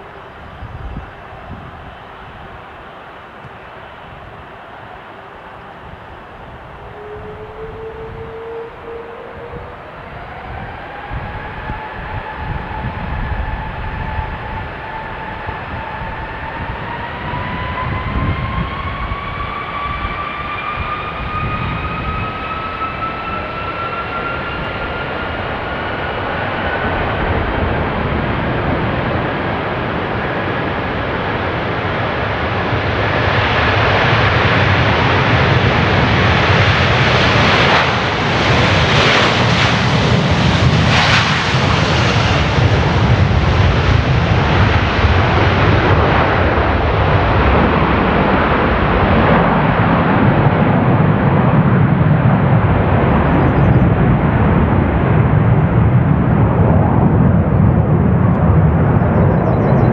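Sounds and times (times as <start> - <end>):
jet engine roar: 0.0 - 59.9
jet engine whine rising: 0.0 - 59.9.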